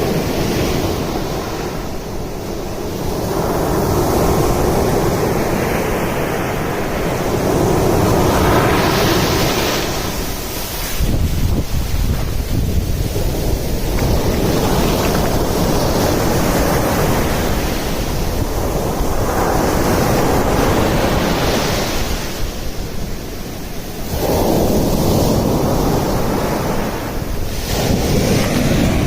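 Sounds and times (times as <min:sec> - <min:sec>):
ocean surf breaking on beach: 0:00.0 - 0:29.0
wind buffeting microphone: 0:00.0 - 0:29.0.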